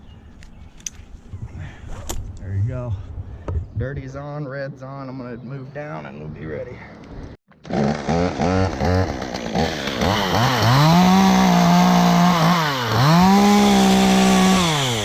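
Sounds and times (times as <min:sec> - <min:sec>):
chainsaw revving: 0:07.5 - 0:15.0.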